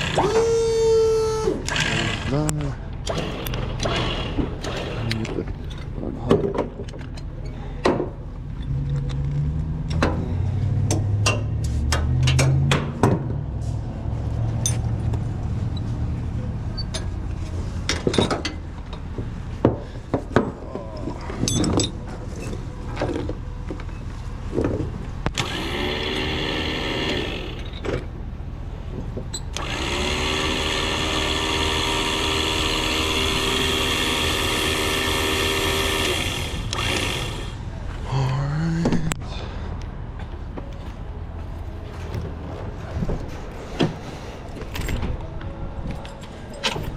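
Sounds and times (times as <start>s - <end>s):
electric winch motor whining: 0.0s - 5.2s, 25.3s - 27.9s, 29.5s - 37.7s.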